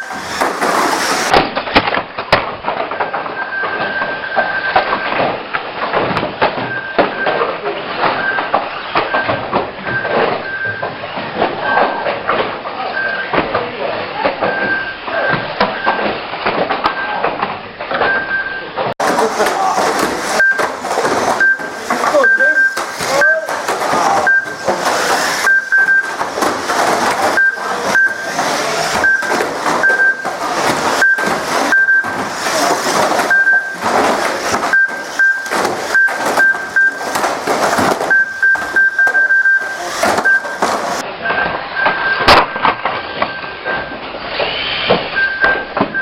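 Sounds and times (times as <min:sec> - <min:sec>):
toy cars clattering: 0:00.0 - 0:09.2, 0:19.0 - 0:41.6
short high beeps: 0:20.3 - 0:20.7, 0:21.3 - 0:23.6, 0:24.2 - 0:24.7, 0:25.3 - 0:26.2, 0:27.3 - 0:30.4, 0:31.0 - 0:32.3, 0:33.2 - 0:33.9, 0:34.7 - 0:37.1, 0:38.1 - 0:40.7.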